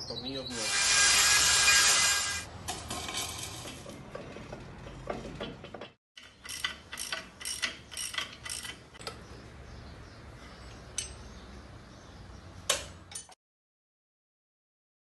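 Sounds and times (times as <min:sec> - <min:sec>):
ratchet wrench clicking: 0:06.2 - 0:08.8.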